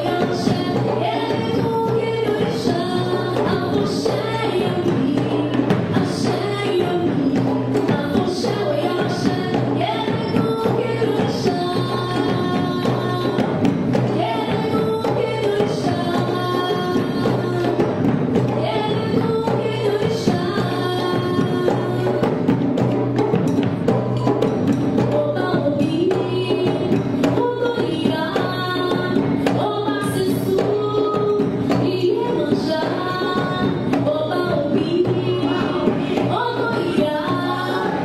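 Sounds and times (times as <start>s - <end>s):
struck percussion beat: 0.0s - 38.0s
person singing: 29.7s - 38.0s.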